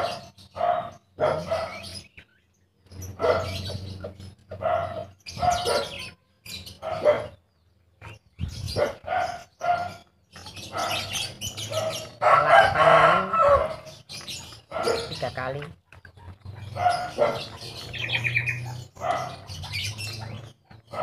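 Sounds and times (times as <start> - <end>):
chicken squawking: 10.6 - 15.3, 15.9 - 21.0.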